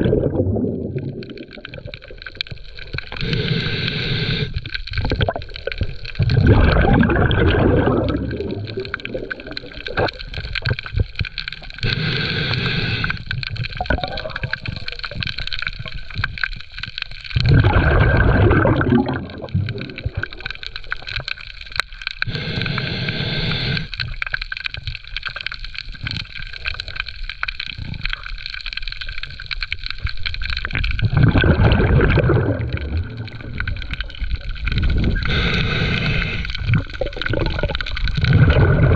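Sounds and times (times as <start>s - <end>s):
exhaled air bubbling underwater: 0.0s - 38.9s
faint crackle: 0.0s - 38.9s.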